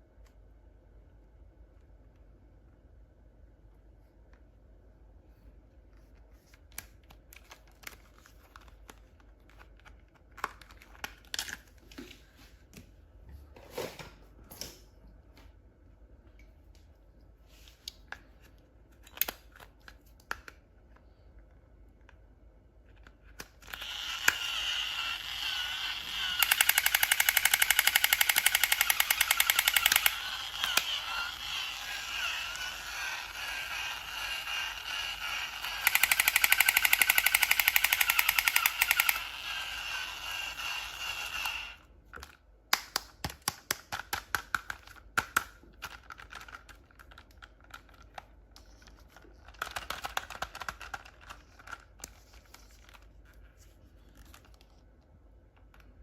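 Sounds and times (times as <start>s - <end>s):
sharp clicks: 25.5s - 39.3s.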